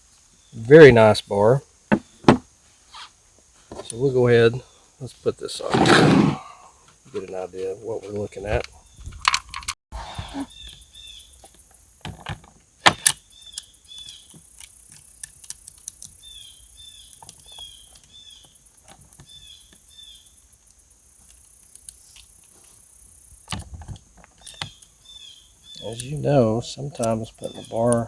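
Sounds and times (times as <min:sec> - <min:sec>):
small birds chirping: 0:00.2 - 0:12.2, 0:12.8 - 0:28.0
insect trill: 0:00.2 - 0:28.0
chainsaw chain clicks: 0:09.2 - 0:09.8.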